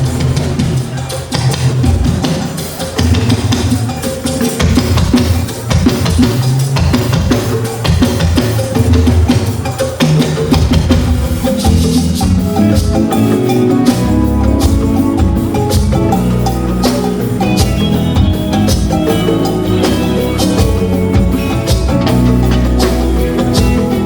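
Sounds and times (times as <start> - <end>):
drums and hand percussion: 0.0 - 24.0
bass line: 10.1 - 24.0.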